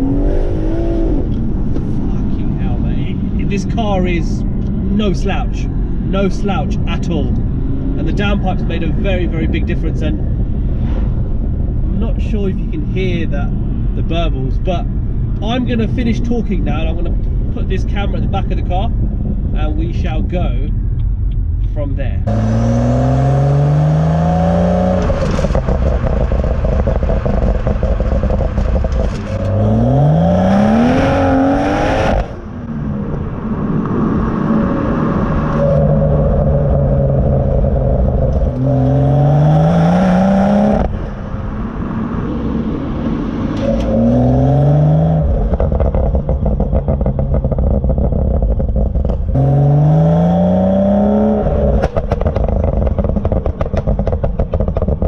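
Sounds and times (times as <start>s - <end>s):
car engine revving hard: 22.3s - 32.4s, 34.4s - 41.0s, 43.4s - 48.0s, 49.3s - 52.6s
exhaust crackles and pops: 24.3s - 41.9s, 45.2s - 49.8s, 51.4s - 55.0s.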